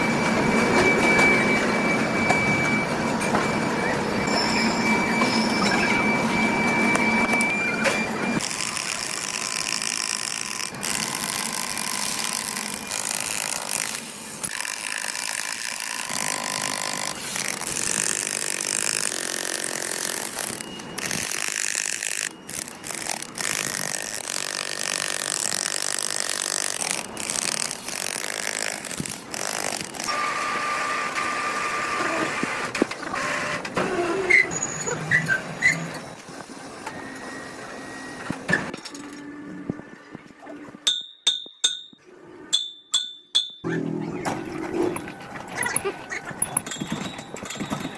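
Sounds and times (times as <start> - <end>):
high metallic pings: 40.9 - 43.7.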